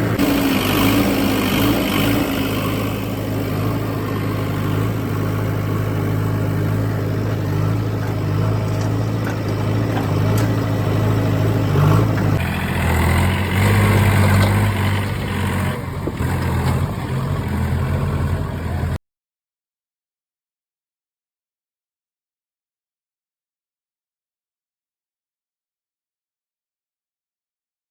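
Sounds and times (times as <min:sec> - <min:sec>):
diesel engine idling: 0:00.0 - 0:19.0.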